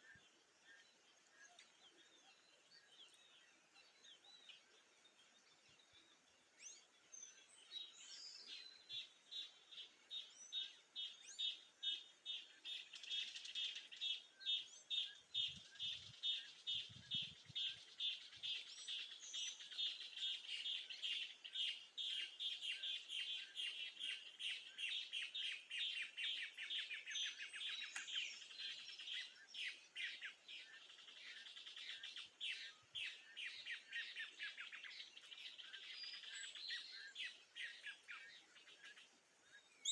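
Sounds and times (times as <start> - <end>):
birds calling: 7.7 - 39.9.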